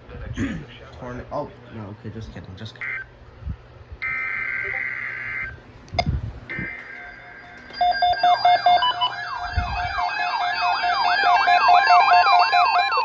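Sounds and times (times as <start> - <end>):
pulsing alarm beep: 4.0 - 5.5, 6.5 - 13.0
rising and falling siren tone: 6.5 - 13.0.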